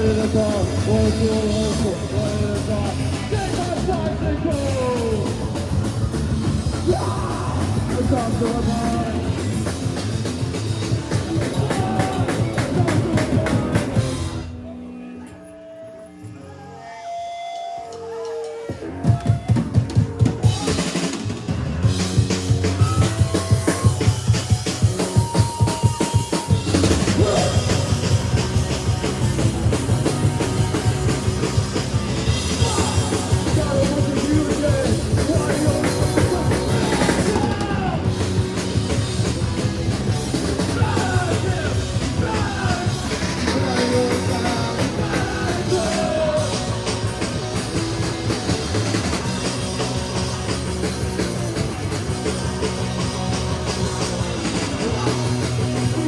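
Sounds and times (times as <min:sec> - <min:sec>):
drum kit: 0:00.0 - 0:14.5, 0:18.7 - 0:56.0
punk rock band playing: 0:00.0 - 0:15.2, 0:18.1 - 0:56.0
person singing: 0:27.1 - 0:28.3, 0:32.5 - 0:38.1, 0:40.6 - 0:47.0.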